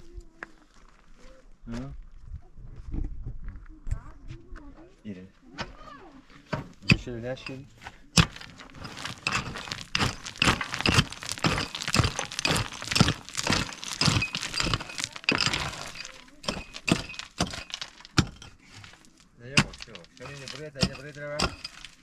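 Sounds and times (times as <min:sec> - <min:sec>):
hard objects clattering: 0:06.5 - 0:22.0.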